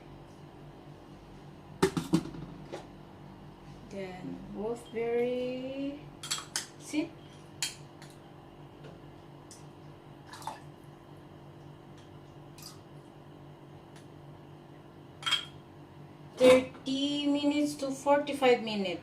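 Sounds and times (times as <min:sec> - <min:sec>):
steady low hum: 0:00.0 - 0:19.0
kitchenware clinking: 0:15.2 - 0:15.6.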